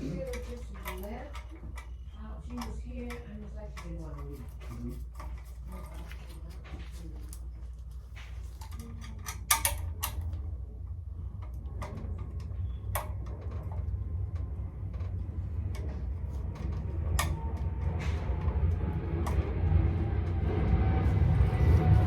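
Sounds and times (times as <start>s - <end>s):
hand tools clicking and tapping: 0.0s - 6.6s, 8.1s - 10.4s, 15.6s - 19.4s
low rumble: 8.1s - 22.0s.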